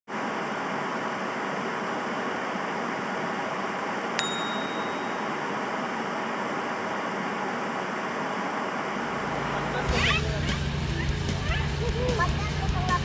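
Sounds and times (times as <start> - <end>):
bright metallic ding: 4.2 - 5.6.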